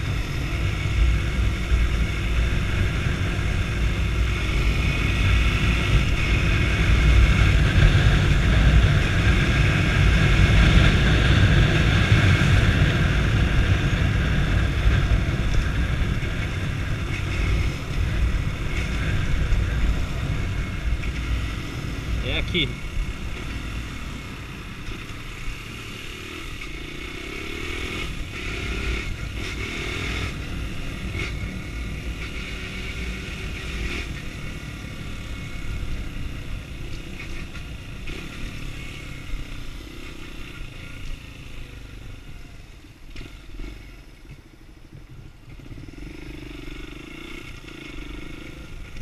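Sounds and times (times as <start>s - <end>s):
motorcycle engine revving: 0.0s - 49.0s.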